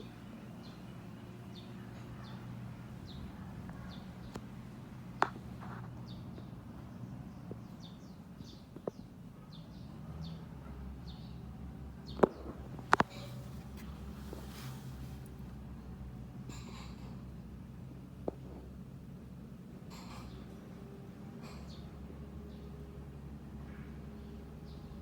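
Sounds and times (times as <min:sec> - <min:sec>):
small birds chirping: 0:00.0 - 0:17.0, 0:21.3 - 0:22.9.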